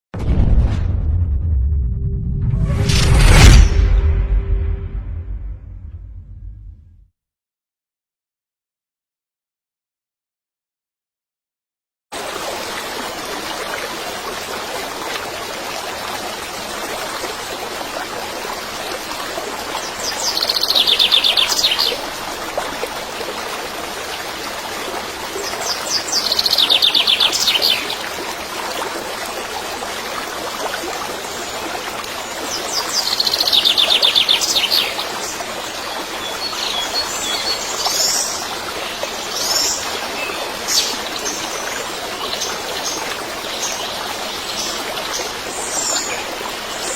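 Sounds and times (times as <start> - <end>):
running water rushing: 12.2 - 46.9
bird chirps: 20.3 - 22.0.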